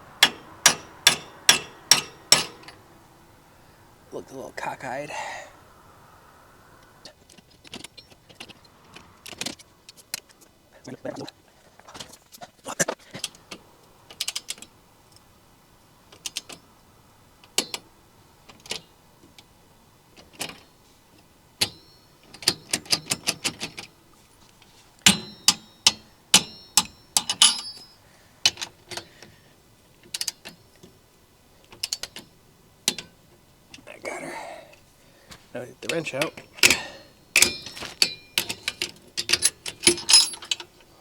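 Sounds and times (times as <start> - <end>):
wrenches clicking on bolts: 0.2 - 2.8, 21.6 - 23.9, 25.0 - 29.2, 31.6 - 32.3, 35.8 - 40.9.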